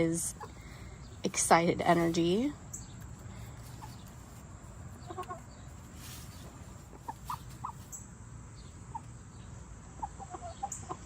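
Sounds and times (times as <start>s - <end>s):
low steady background noise: 0.0s - 11.0s
chickens clucking softly: 5.0s - 5.8s, 6.4s - 11.0s.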